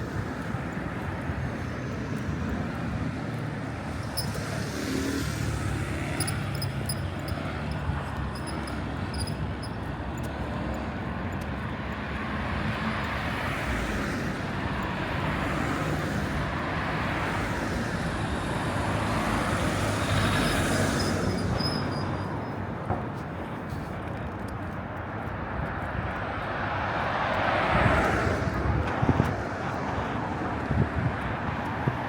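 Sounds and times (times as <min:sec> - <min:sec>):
traffic passing by: 0:00.0 - 0:32.0.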